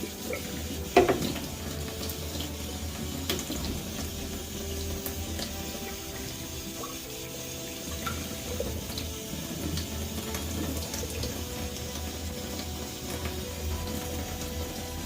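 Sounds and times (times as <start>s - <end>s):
water running: 0.0s - 15.0s.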